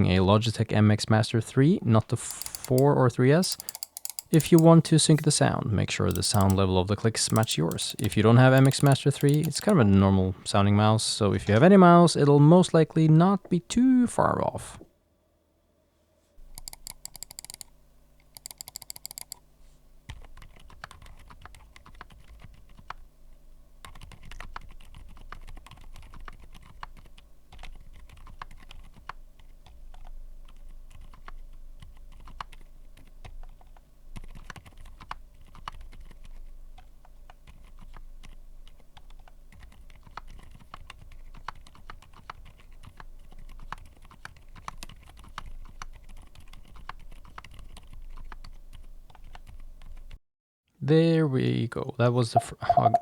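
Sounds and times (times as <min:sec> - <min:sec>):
soft mechanical keyboard typing: 0:01.6 - 0:10.0, 0:16.4 - 0:19.5, 0:20.1 - 0:23.0, 0:23.8 - 0:50.2, 0:52.4 - 0:53.0
sharp clicks: 0:02.1 - 0:05.4, 0:06.0 - 0:10.0, 0:16.5 - 0:17.7, 0:18.4 - 0:19.4.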